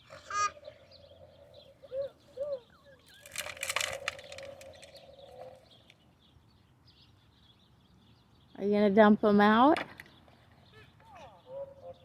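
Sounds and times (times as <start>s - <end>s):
small rocks rattling in toy truck: 3.1s - 5.0s.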